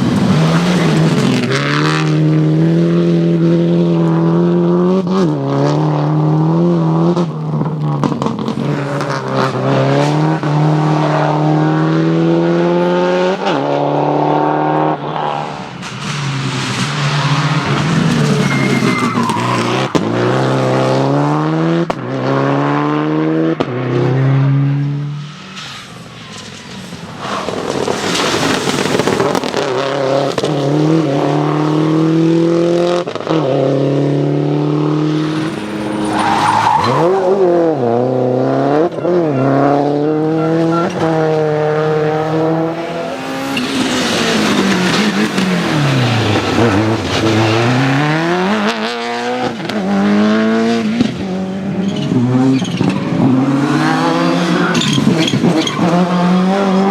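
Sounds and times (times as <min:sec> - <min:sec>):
rally car engines revving: 0:00.0 - 0:56.9
tyres skidding: 0:06.1 - 0:22.4, 0:23.6 - 0:31.8, 0:33.4 - 0:56.9
loud rush of noise: 0:40.0 - 0:49.0.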